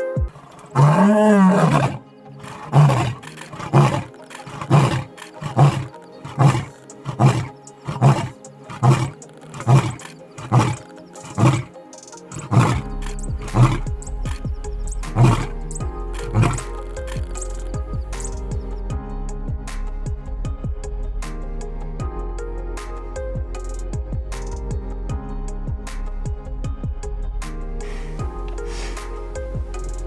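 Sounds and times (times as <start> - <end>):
background music: 0.0 - 30.0
roar-like animal calls: 0.4 - 14.4, 15.1 - 15.6, 16.2 - 17.3.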